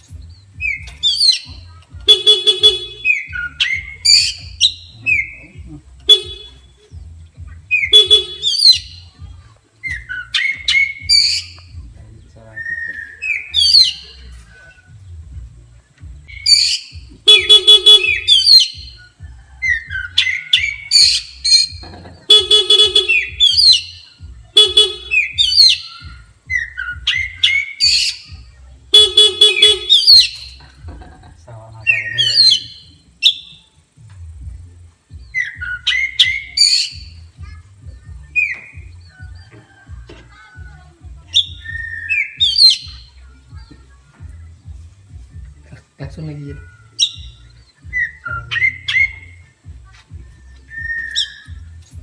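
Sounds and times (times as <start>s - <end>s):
bird singing whistles and chirps: 0.0s - 30.9s, 31.5s - 34.1s, 35.1s - 40.7s, 41.3s - 52.0s
horn-like honks: 1.9s - 3.8s, 5.0s - 6.9s, 7.7s - 8.9s, 17.2s - 18.8s, 21.3s - 25.9s, 28.9s - 30.9s.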